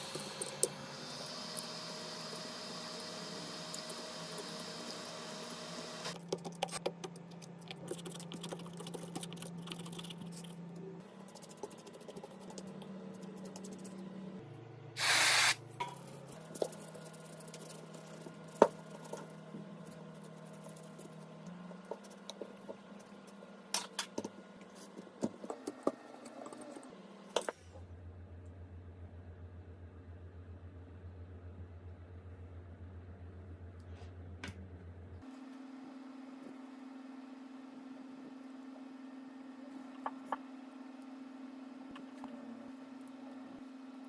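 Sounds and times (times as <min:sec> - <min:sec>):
short hiss: 0:15.0 - 0:15.6
low steady hum: 0:26.2 - 0:44.0.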